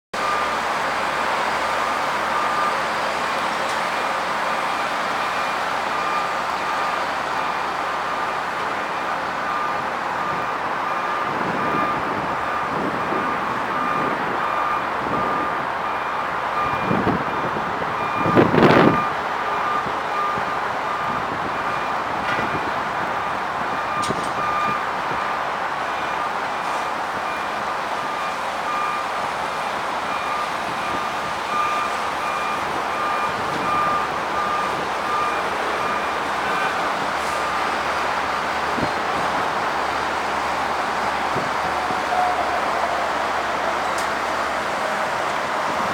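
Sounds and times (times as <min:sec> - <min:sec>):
reversing alarm beeping: 0:00.2 - 0:45.9
machinery rumble: 0:25.8 - 0:45.9.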